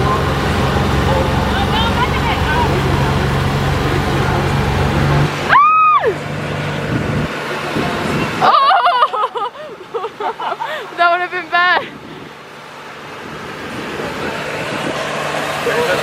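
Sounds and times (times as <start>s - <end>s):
boat motor running: 6.8s - 7.4s.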